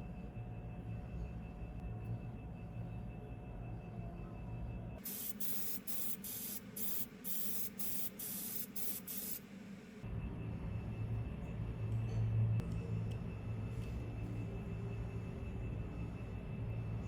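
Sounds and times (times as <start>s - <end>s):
spray hissing in bursts: 5.1s - 9.4s.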